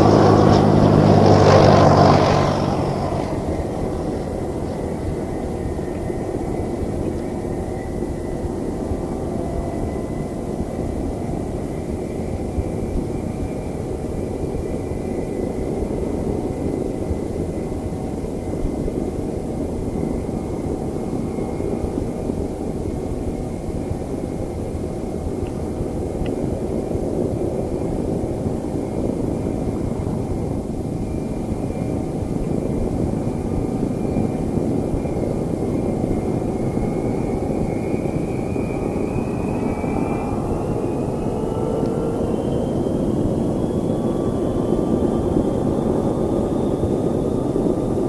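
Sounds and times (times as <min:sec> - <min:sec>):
low drone: 0:00.0 - 0:07.5
airliner engine rumble: 0:00.0 - 0:48.0.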